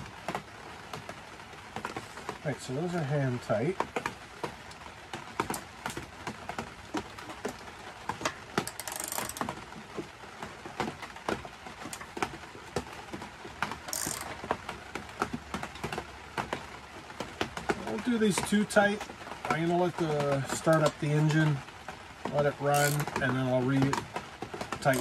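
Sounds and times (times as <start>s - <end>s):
ratchet wrench clicking: 8.7s - 9.4s, 13.9s - 14.3s, 22.8s - 23.0s.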